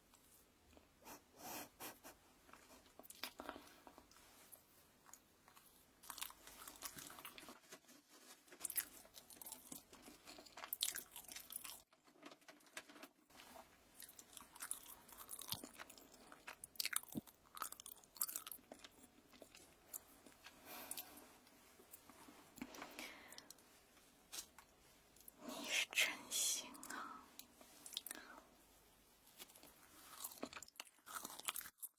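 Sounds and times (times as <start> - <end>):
chewing crisp food: 2.8 - 7.6, 8.5 - 12.3, 13.5 - 23.6, 27.4 - 28.2, 29.3 - 31.9.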